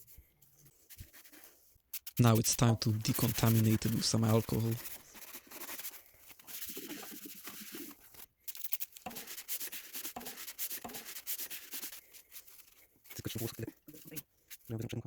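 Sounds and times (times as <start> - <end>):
rough rubbing strokes: 0.7 - 8.2, 9.0 - 14.7.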